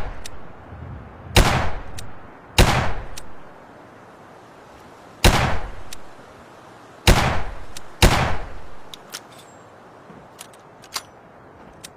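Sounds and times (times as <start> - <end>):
revolver gunshots echoing: 1.4 - 2.0, 2.6 - 3.2, 5.2 - 5.8, 7.1 - 8.6
light clicks: 10.3 - 11.9.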